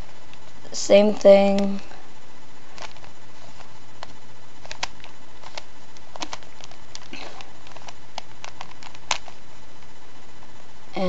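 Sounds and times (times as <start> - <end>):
background hiss: 0.0 - 11.0
puzzle cube clicks and clacks: 2.8 - 9.4.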